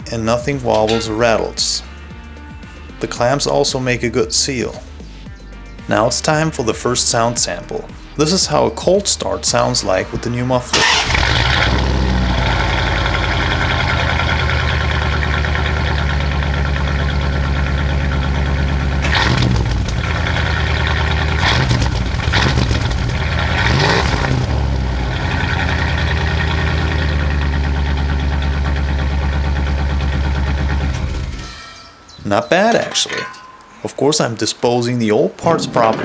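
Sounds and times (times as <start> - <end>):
engine idling and revving: 7.8 - 31.6.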